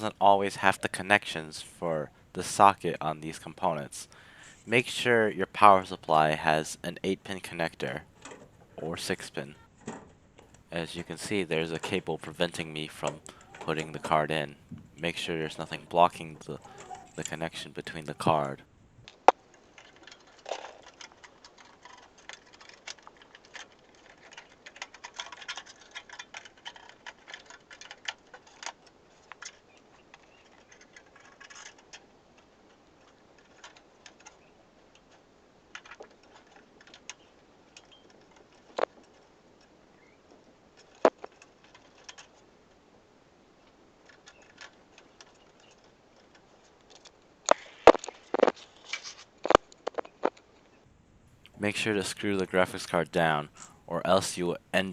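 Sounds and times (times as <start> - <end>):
plastic and metal clicks and rattles: 19.1 - 39.3, 40.8 - 42.4, 44.0 - 50.6.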